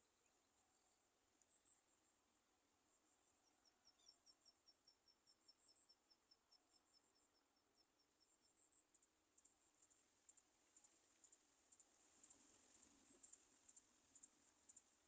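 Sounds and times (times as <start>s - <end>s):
insect chirping: 3.2s - 15.0s.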